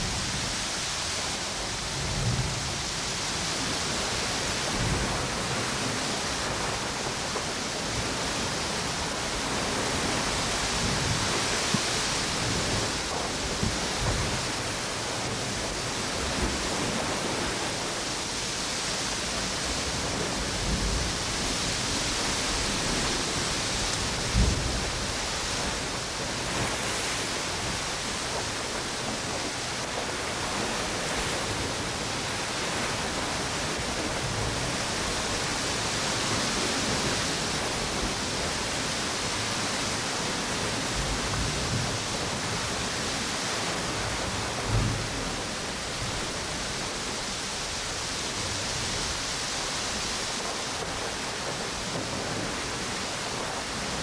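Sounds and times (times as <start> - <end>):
low thumps from wind gusts: 0.0 - 43.2, 43.8 - 49.5
ocean waves on a beach: 0.0 - 54.0
strong wind: 0.0 - 54.0.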